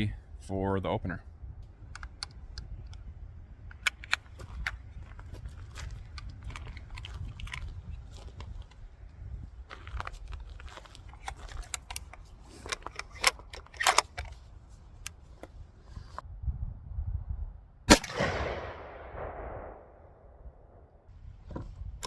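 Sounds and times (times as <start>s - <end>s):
gun handling clicks and knocks: 1.6s - 16.2s, 21.5s - 21.8s
loud gunshot with echo: 17.9s - 20.4s.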